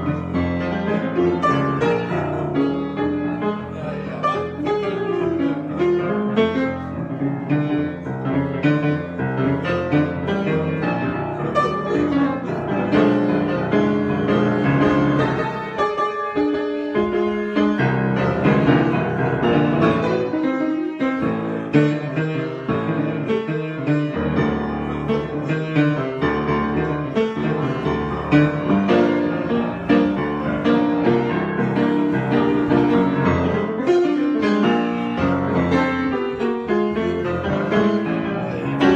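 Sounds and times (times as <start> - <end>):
improvised piano: 0.0 - 38.9.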